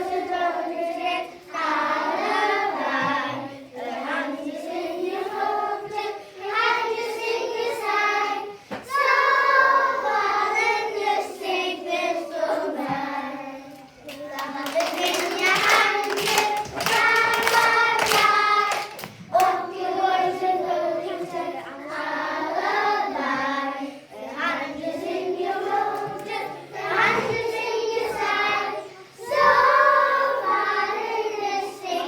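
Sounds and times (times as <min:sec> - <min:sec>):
children singing together: 0:00.0 - 0:32.0
hand claps: 0:14.0 - 0:19.6.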